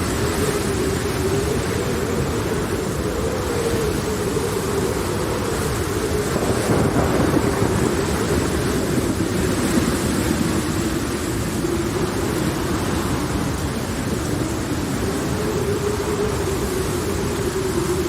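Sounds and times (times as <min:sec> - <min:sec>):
low thunder rumble: 0:03.9 - 0:18.0.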